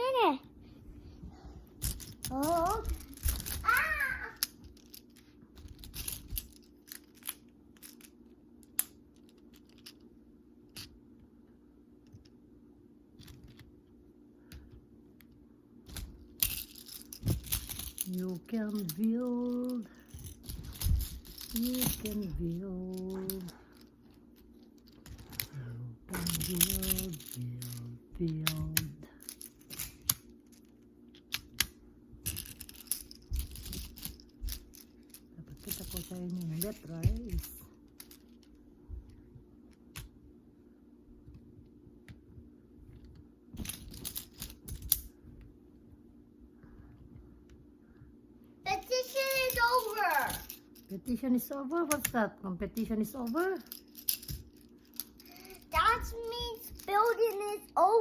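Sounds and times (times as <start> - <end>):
low room hum: 0.0 - 58.0
magnetic toy pieces clicking: 14.6 - 25.5, 26.1 - 38.6, 48.7 - 52.2.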